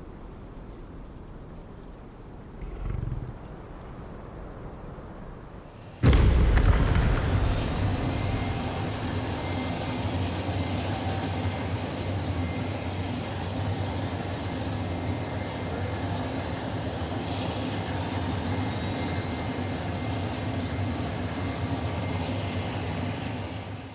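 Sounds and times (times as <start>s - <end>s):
steady dense rumbling: 2.3s - 10.4s
sudden loud hit: 6.0s - 9.8s.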